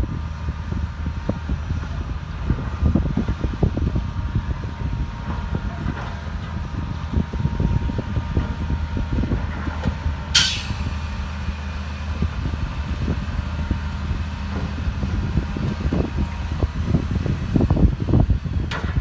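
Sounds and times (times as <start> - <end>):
diesel machinery droning: 0.0 - 19.0
loud air hiss: 10.4 - 11.1.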